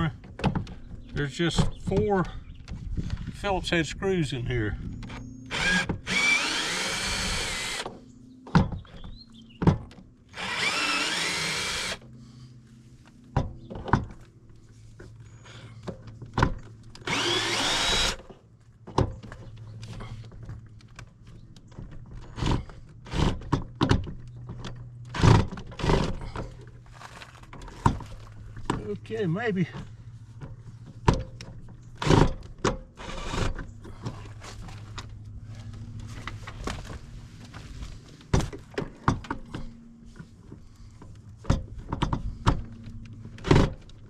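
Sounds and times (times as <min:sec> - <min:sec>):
power drill motor spinning: 0:05.0 - 0:08.0, 0:10.3 - 0:12.1, 0:17.0 - 0:18.3, 0:33.0 - 0:33.6.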